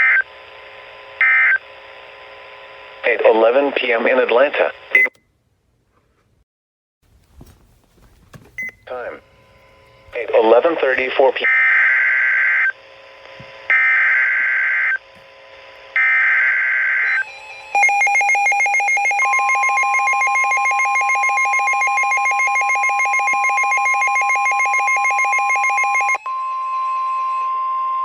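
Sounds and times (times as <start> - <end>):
steady warning alarm tone: 15.9 - 28.0.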